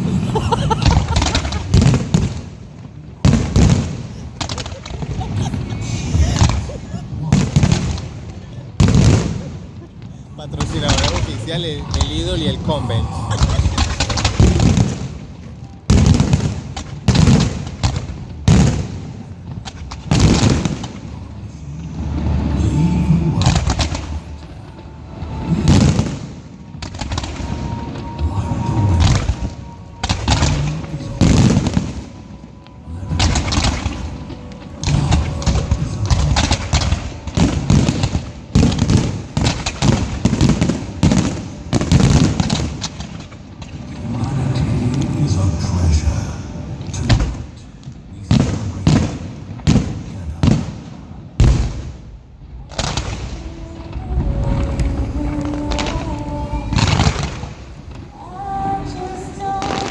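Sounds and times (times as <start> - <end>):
fireworks booming: 0.0 - 59.9.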